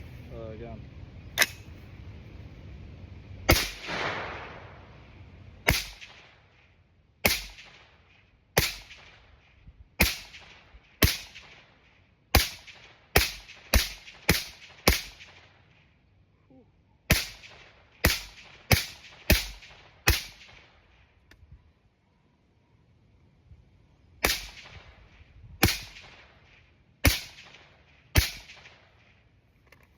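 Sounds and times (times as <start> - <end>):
suppressed rifle shots: 3.5 - 4.8, 5.7 - 6.4, 7.2 - 8.0, 8.6 - 9.2, 10.0 - 15.6, 17.1 - 20.9, 24.2 - 26.4, 27.0 - 29.1.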